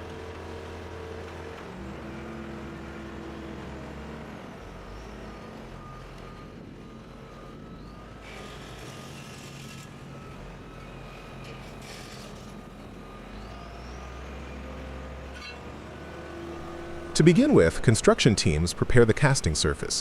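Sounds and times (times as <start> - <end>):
heavy machinery engine running: 0.1 - 20.0
reversing alarm beeping: 4.7 - 14.8, 16.0 - 19.7.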